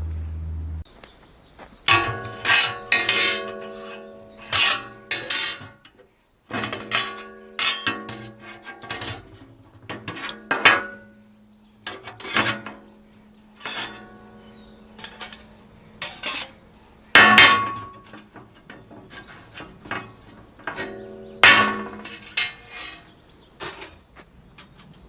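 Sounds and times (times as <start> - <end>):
metal utensil clanking on cookware: 1.9 - 5.9, 6.5 - 11.2, 11.8 - 12.9, 13.6 - 16.6, 17.2 - 23.9.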